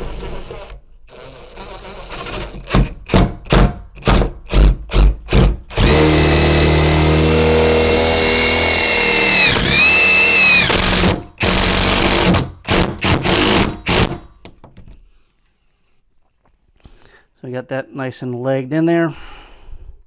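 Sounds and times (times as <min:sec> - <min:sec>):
power drill driving a screw: 0:00.0 - 0:02.9, 0:04.0 - 0:14.2.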